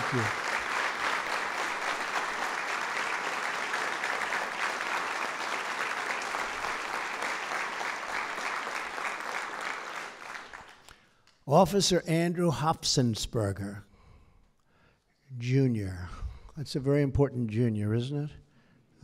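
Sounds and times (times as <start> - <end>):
audience applauding: 0.0 - 10.9.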